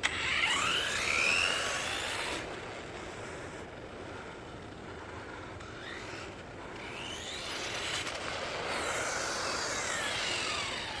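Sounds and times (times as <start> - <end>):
electric motor whining: 0.0 - 3.4, 5.7 - 11.0.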